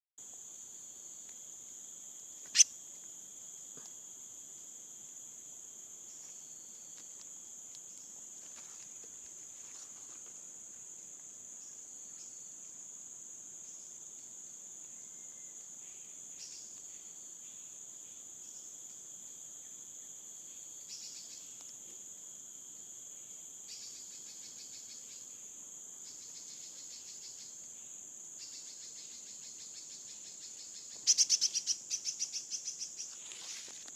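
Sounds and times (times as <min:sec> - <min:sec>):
crickets chirring: 0:00.2 - 0:33.9
rapid cricket trills: 0:00.2 - 0:33.9
loud quick chirps: 0:31.0 - 0:32.1.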